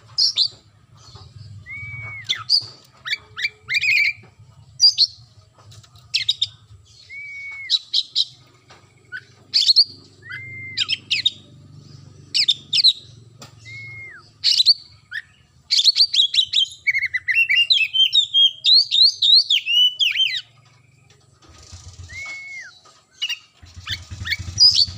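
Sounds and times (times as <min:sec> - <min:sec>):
songbird whistling: 0:01.5 - 0:04.2, 0:06.2 - 0:08.4, 0:09.1 - 0:11.4, 0:12.4 - 0:20.5, 0:22.0 - 0:24.9.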